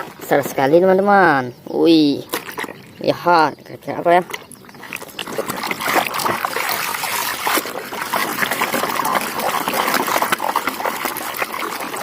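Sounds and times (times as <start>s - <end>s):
water splashing and trickling: 0.0s - 12.0s
small wet clicks and knocks: 2.2s - 3.0s, 3.7s - 12.0s.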